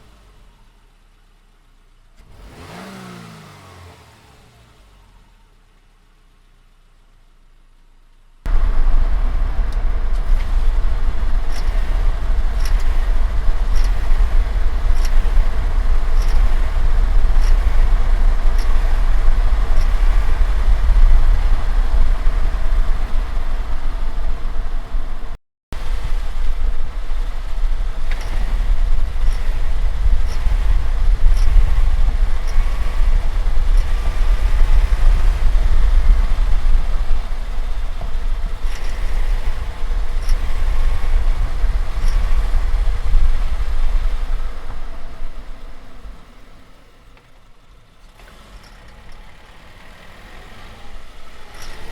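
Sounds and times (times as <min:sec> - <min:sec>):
car engine and road rumble: 0:00.0 - 0:51.9
faint high ticks: 0:11.4 - 0:19.1.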